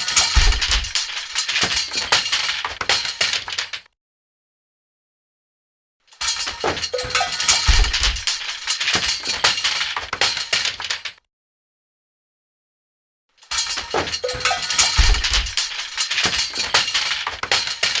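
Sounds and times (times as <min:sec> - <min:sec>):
metal objects clattering: 0:00.0 - 0:03.8, 0:06.2 - 0:11.2, 0:13.5 - 0:18.0.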